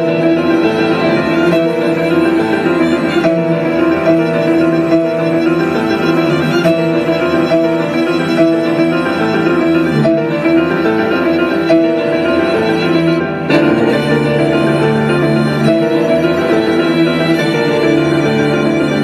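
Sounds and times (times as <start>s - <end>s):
bowed strings playing: 0.0s - 19.0s
piano: 0.0s - 19.0s.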